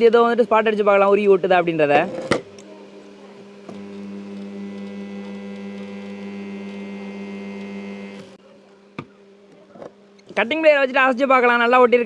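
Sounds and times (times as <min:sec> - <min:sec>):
spot welder humming: 0:02.3 - 0:10.8.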